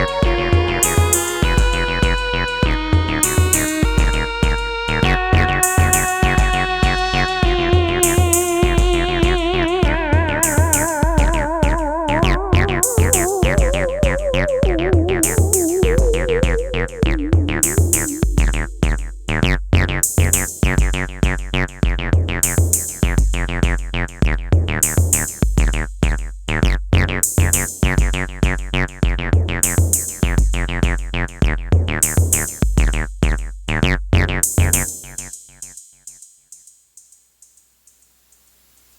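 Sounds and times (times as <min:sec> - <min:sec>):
plucked synth notes: 0:00.0 - 0:20.0
drum machine beat: 0:00.0 - 0:36.7.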